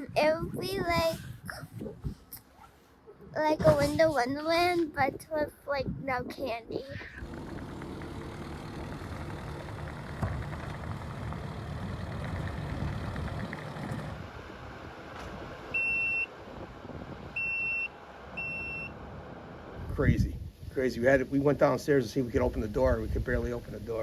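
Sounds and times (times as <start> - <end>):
heavy vehicle engine running: 7.1 - 20.0
reversing alarm beeps: 15.8 - 16.3, 17.4 - 18.9.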